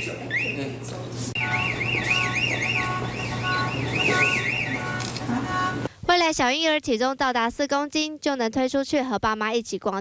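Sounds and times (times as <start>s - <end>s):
electronic alarm rising whoops: 1.4s - 5.8s
fast warbling siren: 1.4s - 5.8s.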